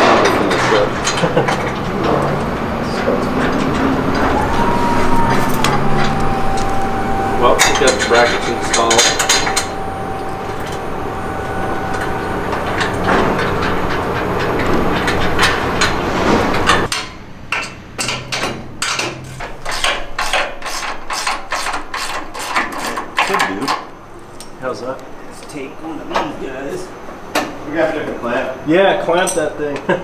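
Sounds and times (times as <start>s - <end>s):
steady shop noise: 0.0s - 30.0s.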